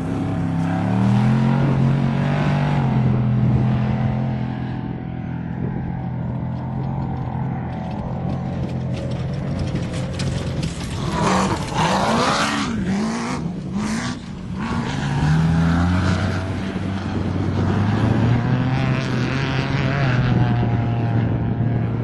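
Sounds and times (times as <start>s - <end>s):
race engine revving: 7.0s - 22.0s.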